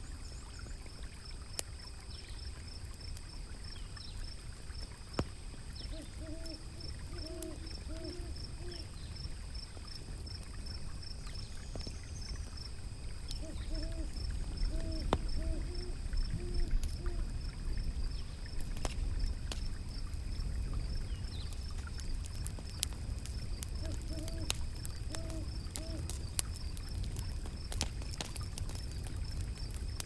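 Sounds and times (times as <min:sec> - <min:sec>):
fire crackling: 0:00.0 - 0:30.0
flowing water: 0:00.0 - 0:30.0
faint high ticking: 0:05.2 - 0:30.0
bird hooting: 0:05.9 - 0:08.9, 0:13.3 - 0:17.2, 0:23.8 - 0:26.2.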